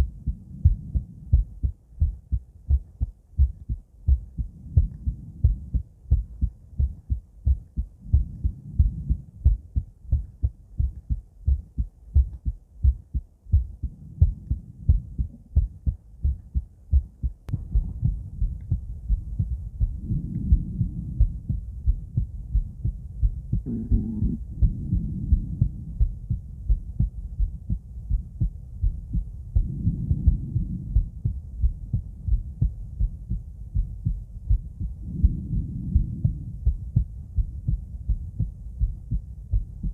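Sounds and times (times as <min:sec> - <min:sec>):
heartbeat through stethoscope: 0:00.0 - 0:39.9.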